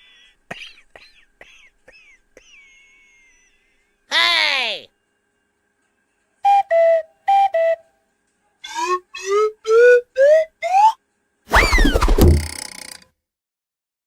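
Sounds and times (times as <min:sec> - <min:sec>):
whistle-like notes: 0:06.4 - 0:07.9, 0:08.6 - 0:12.5
thump: 0:11.5 - 0:12.6.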